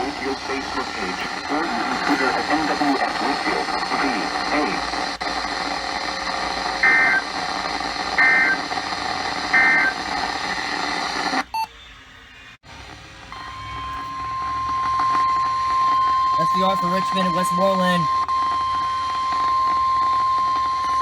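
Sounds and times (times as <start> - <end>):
radio hiss: 0.0 - 11.7, 12.7 - 18.6
two-pitch electronic bursts: 13.3 - 21.0.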